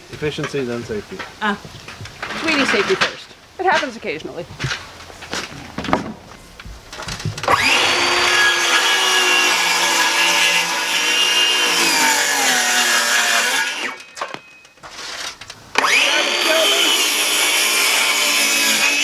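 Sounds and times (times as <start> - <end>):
electric power tool running: 7.4 - 14.0, 15.8 - 19.0.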